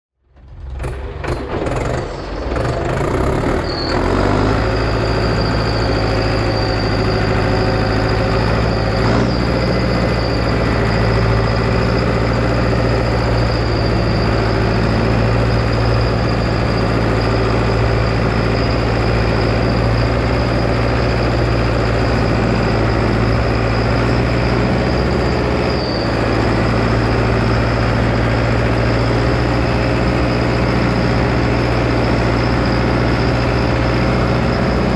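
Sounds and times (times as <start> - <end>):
tractor engine under load: 0.2 - 34.9
brief high squeal: 0.5 - 34.9.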